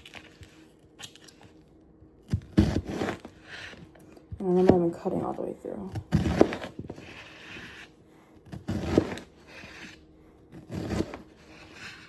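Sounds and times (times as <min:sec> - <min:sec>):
knife cutting through onion: 0:02.2 - 0:04.9, 0:05.9 - 0:12.0.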